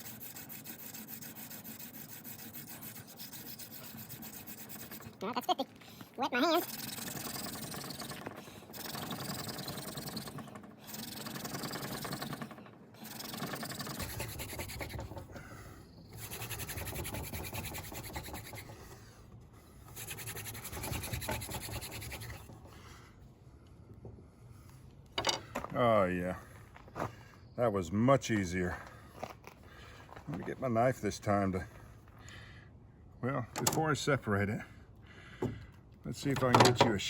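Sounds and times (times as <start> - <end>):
hand drill rasping on wood: 0.0 - 5.5, 6.4 - 15.5, 16.1 - 18.8, 19.9 - 22.6.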